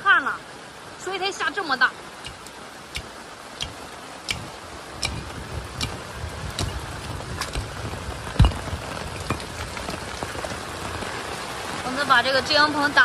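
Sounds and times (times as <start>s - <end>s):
heavy rain falling: 0.0s - 13.0s
sharp tapping: 2.2s - 7.8s.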